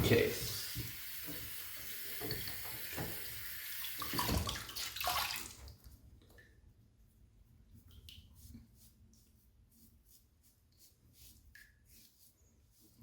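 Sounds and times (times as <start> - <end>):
tap water running into sink: 0.0 - 5.7.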